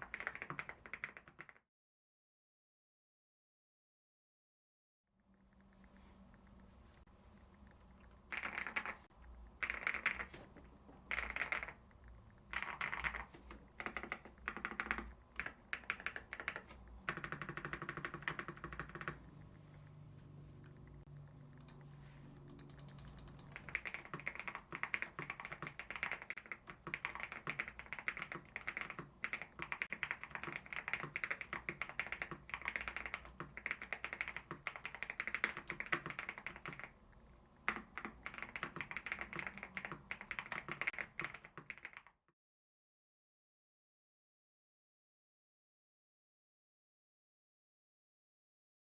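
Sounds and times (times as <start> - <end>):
typing on mechanical keyboard: 0.0 - 1.6, 7.6 - 19.4, 22.4 - 42.2.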